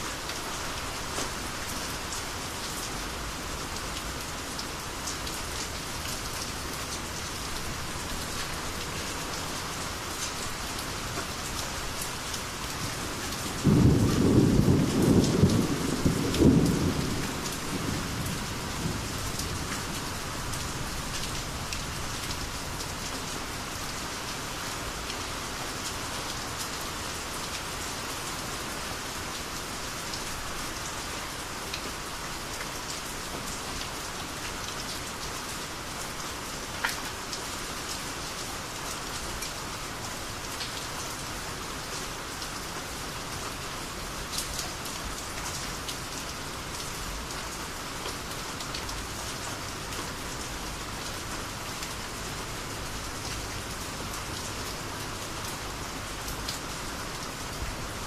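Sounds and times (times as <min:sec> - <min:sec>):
steady rain falling: 0:00.0 - 0:58.0
rumbling thunder crack: 0:13.6 - 0:19.0.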